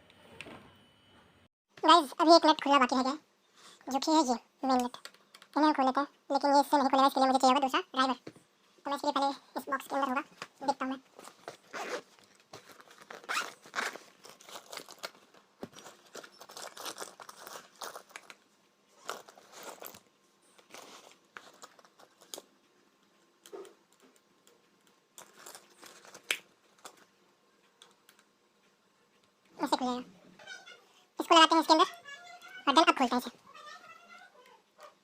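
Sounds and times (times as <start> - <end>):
rummaging through tools: 11.2 - 18.4, 19.0 - 20.0, 25.2 - 26.2.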